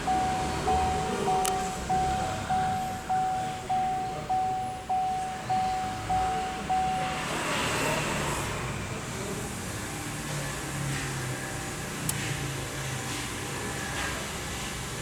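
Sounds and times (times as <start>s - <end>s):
low steady hum: 0.0s - 7.1s
dashboard warning chime: 0.0s - 8.0s.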